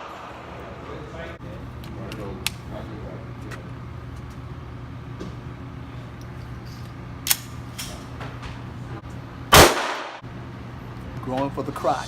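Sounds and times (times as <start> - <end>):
ventilation hum: 0.0 - 12.0
gunshots: 9.5 - 10.2.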